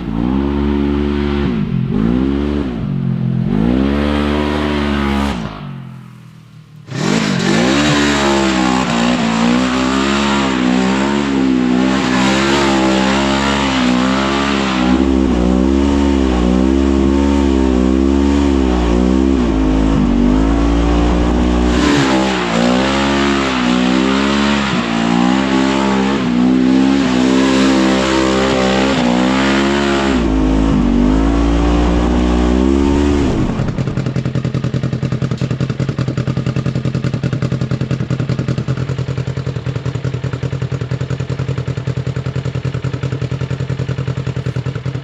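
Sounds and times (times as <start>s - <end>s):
engine revving: 0.0s - 35.4s, 44.3s - 44.7s.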